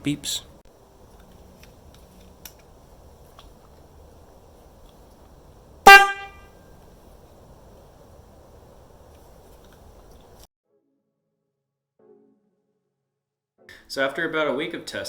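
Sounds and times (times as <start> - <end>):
car horn honk: 5.8 - 6.7.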